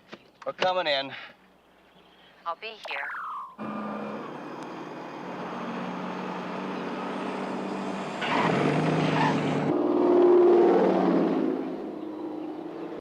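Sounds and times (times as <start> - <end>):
vehicle engines running: 3.6 - 13.0.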